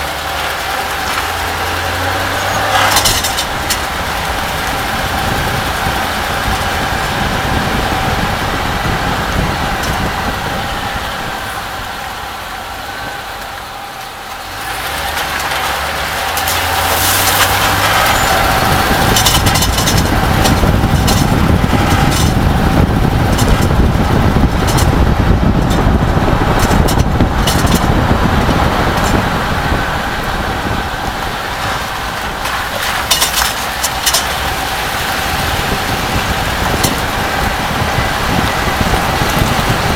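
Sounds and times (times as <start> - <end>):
truck engine and road noise: 0.0 - 39.9
sharp metal rattling: 0.3 - 6.7, 15.0 - 28.1, 28.8 - 29.3, 31.4 - 37.7.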